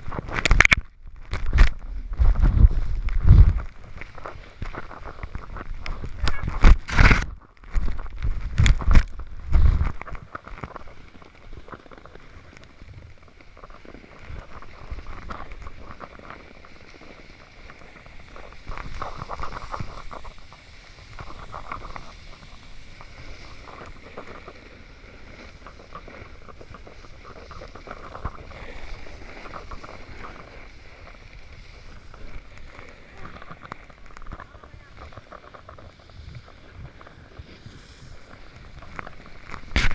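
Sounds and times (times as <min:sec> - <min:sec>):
snowboard scraping over snow: 0:00.0 - 0:39.9
wind rushing over microphone: 0:00.0 - 0:39.9.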